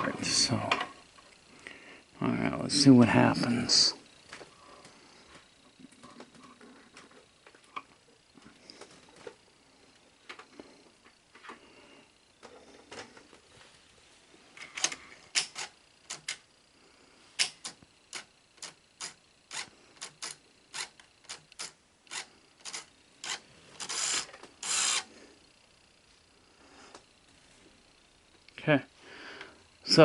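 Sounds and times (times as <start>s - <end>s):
rasping mechanical bursts: 14.7s - 16.4s, 17.3s - 25.6s.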